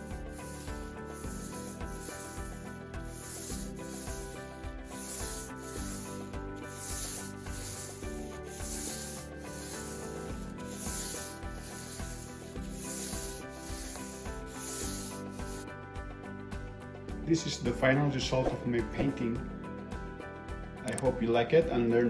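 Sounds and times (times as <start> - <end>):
paintbrush swishing on wood: 0.0 - 15.6.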